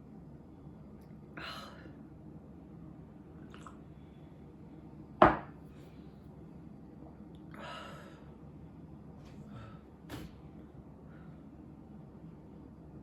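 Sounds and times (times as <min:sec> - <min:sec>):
hard object knocking: 0:05.2 - 0:05.5.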